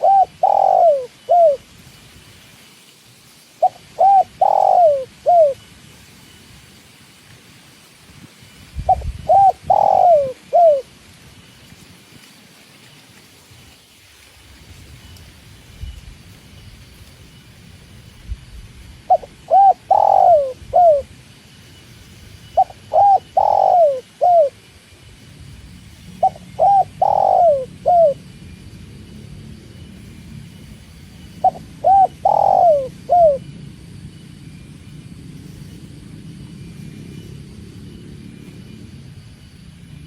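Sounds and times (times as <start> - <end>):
dove cooing: 0.0 - 1.6, 3.6 - 5.6, 8.8 - 10.9, 19.1 - 21.1, 22.6 - 24.6, 26.2 - 28.3, 31.4 - 33.6.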